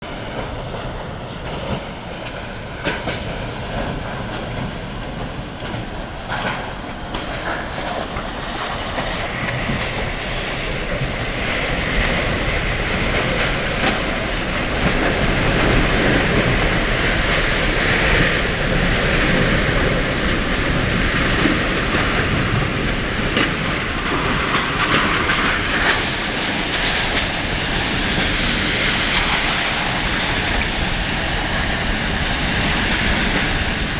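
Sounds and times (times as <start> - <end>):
strong wind roaring: 0.0 - 33.9.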